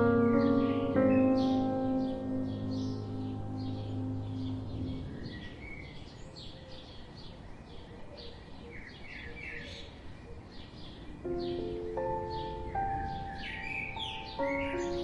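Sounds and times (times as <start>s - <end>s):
soft held music notes: 0.0s - 5.4s
small birds chirping: 0.0s - 15.0s.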